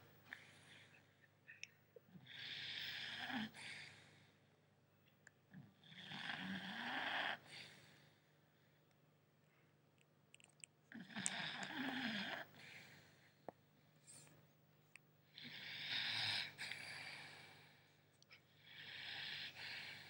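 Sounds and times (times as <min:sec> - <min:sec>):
puppy snoring: 0:02.2 - 0:03.6, 0:05.6 - 0:07.8, 0:10.9 - 0:12.8, 0:15.3 - 0:17.7, 0:18.6 - 0:20.0.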